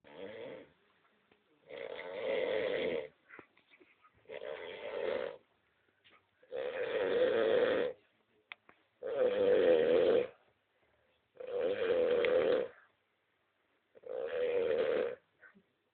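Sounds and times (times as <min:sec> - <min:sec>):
person snoring: 0:00.1 - 0:00.7, 0:01.7 - 0:03.1, 0:04.3 - 0:05.4, 0:06.5 - 0:08.0, 0:09.0 - 0:10.4, 0:11.4 - 0:12.8, 0:14.0 - 0:15.2.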